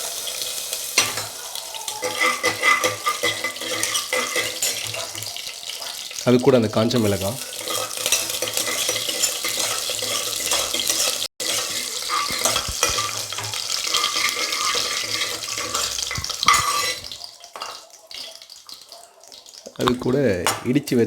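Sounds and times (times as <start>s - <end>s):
spices sizzling in hot oil: 0.0s - 20.9s.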